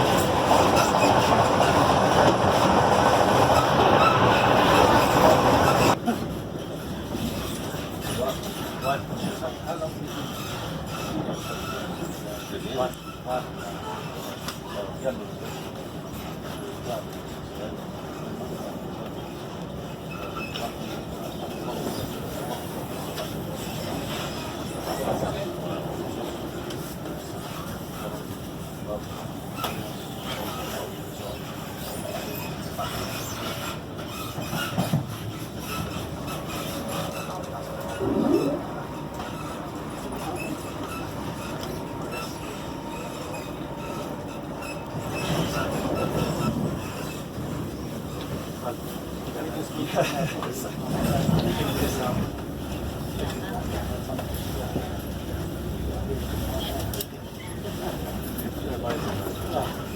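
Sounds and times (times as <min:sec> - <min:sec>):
train wheels rumbling on rails: 0:00.0 - 0:59.9
faint wheel squeal: 0:19.8 - 0:25.4, 0:27.2 - 0:48.3.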